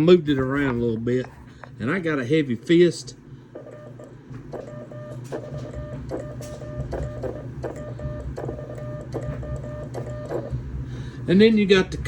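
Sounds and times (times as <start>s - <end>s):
morse code sidetone beeps: 4.6s - 10.5s.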